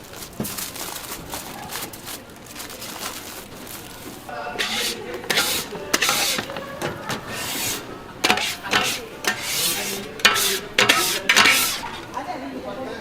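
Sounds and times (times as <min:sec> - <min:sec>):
rough scraping and rubbing: 0:04.5 - 0:12.1.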